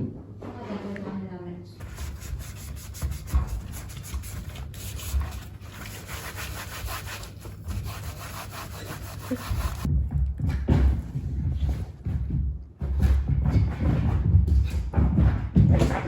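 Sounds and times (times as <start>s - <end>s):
rapid rubbing and scratching: 1.8s - 9.9s.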